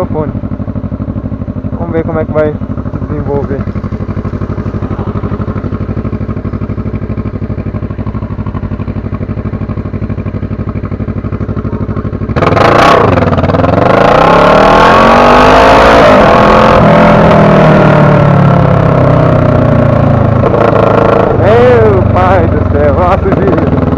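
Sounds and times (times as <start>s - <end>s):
motorcycle engine: 0.0s - 23.9s.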